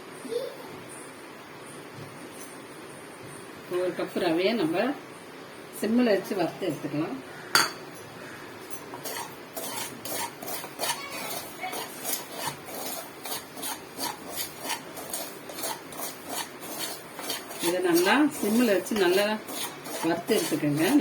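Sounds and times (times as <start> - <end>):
utensil scraping metal pan: 8.8 - 21.0.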